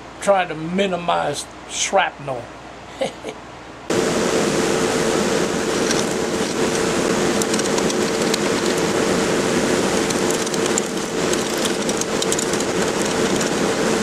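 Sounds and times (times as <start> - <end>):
wood lathe hum: 5.6 - 14.0
sharp ticks of tool and chips: 10.0 - 13.6.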